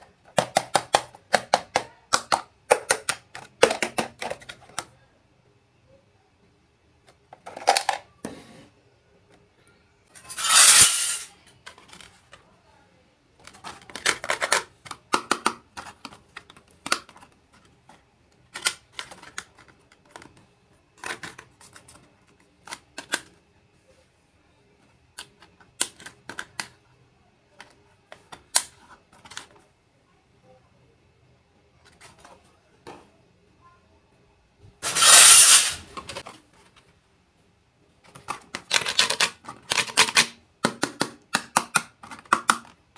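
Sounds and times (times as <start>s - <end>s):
toy pieces clicking and tapping: 0.2s - 4.4s, 13.5s - 17.3s, 38.2s - 42.8s.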